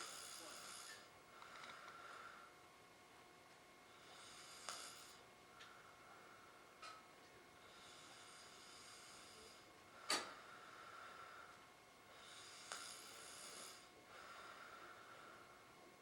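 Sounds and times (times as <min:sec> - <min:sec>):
man snoring: 0:00.0 - 0:01.1, 0:03.9 - 0:05.2, 0:07.6 - 0:10.2, 0:12.1 - 0:15.4.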